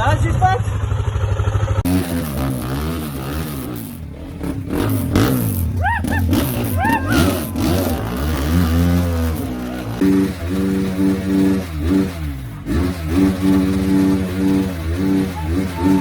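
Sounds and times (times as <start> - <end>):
motorcycle engine revving: 0.0 - 16.0
short high calls: 5.8 - 9.4, 15.2 - 16.0.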